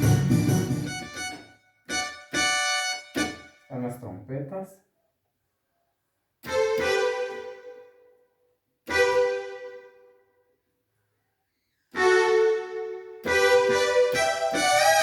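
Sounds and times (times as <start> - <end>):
electronic keyboard notes: 0.0 - 3.7, 6.4 - 7.9, 8.9 - 10.0, 12.0 - 15.0.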